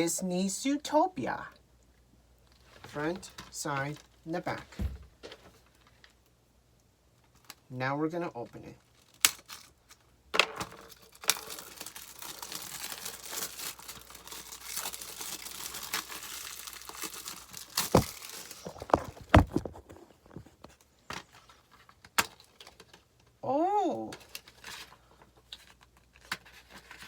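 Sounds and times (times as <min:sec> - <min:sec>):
plastic wrap crinkling: 0:10.8 - 0:23.1
plastic case knocks and clicks: 0:17.9 - 0:20.5.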